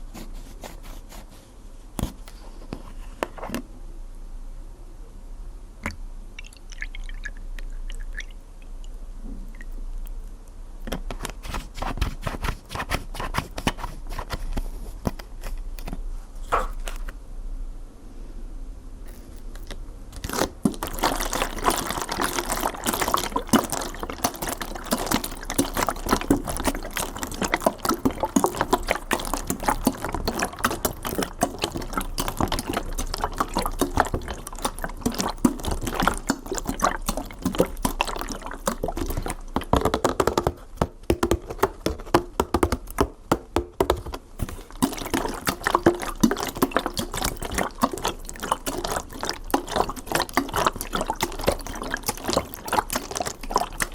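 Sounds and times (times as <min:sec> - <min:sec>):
water pouring and bubbling: 0:06.4 - 0:08.6, 0:19.1 - 0:53.9.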